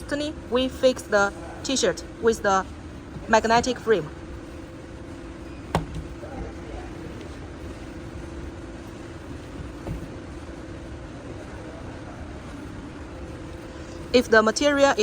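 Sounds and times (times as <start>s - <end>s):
low machinery hum: 0.0s - 15.0s
soft knock: 5.7s - 6.2s, 9.6s - 10.1s.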